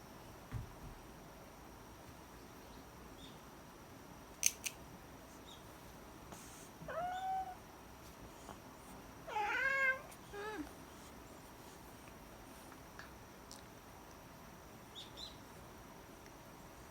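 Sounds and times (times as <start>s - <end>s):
cat meowing: 6.9s - 7.6s, 9.3s - 10.6s.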